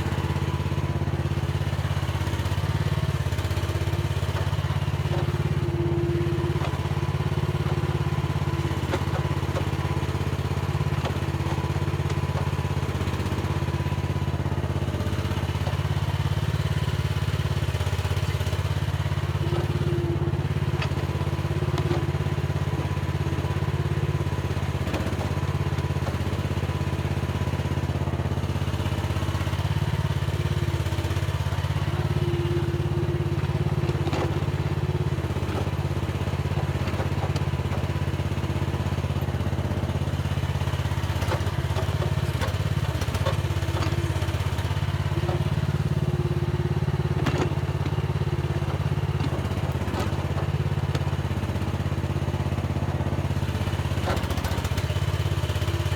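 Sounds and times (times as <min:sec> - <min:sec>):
mini excavator engine running: 0:00.0 - 0:55.9.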